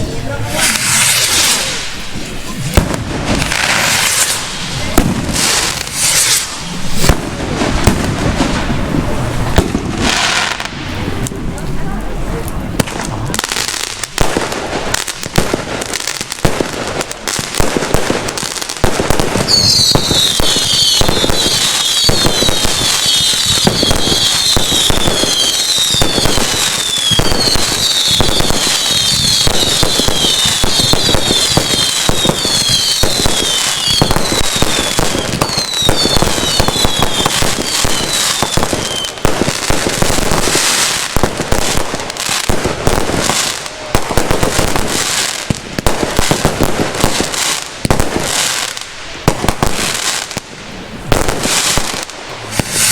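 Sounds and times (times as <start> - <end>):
fireworks bangs and crackles: 0.0 - 52.9
falling whistles: 19.5 - 22.1.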